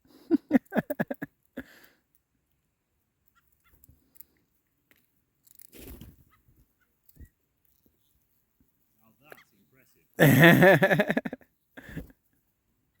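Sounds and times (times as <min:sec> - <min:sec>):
soft rustle: 0:02.4 - 0:10.0.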